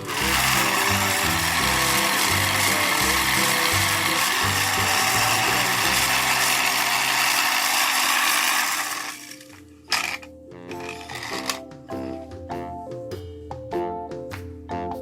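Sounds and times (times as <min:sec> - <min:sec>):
small toy motor with gear rattle: 0:00.0 - 0:11.6.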